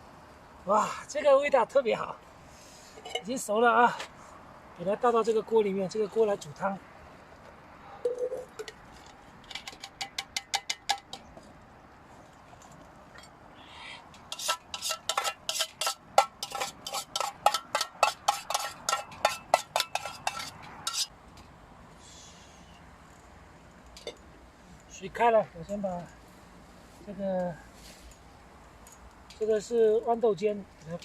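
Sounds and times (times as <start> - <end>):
metal spatula scraping a pan: 14.3 - 21.1.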